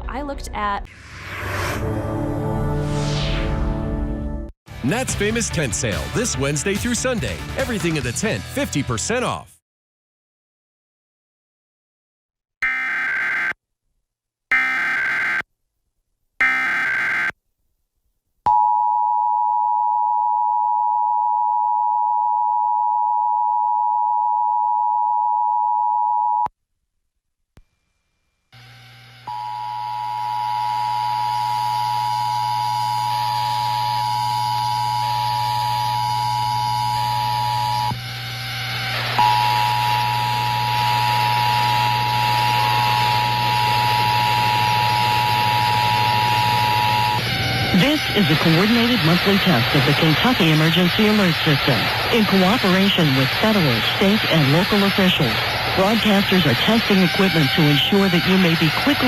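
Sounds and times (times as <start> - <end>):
two-tone attention signal: 43.1 - 53.0, 53.6 - 59.0.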